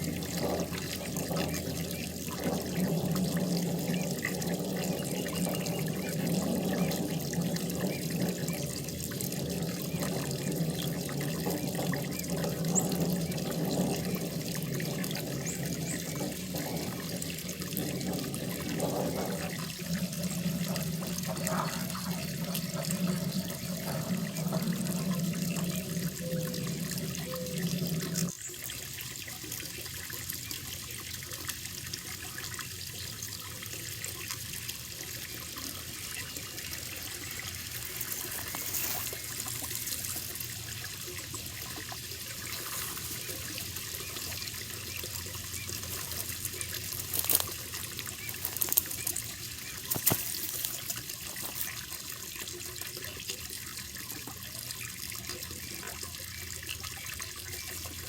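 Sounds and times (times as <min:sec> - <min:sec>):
low hum: 0:00.0 - 0:28.3
pond water trickling: 0:00.0 - 0:58.0.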